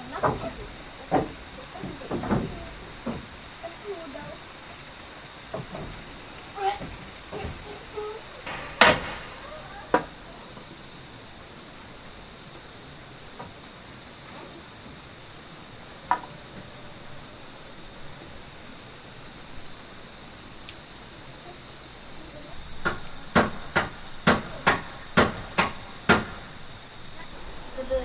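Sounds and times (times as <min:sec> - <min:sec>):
insect chorus shrilling: 0:00.0 - 0:28.0
sharp knocks on wood: 0:08.5 - 0:09.3, 0:22.6 - 0:27.3.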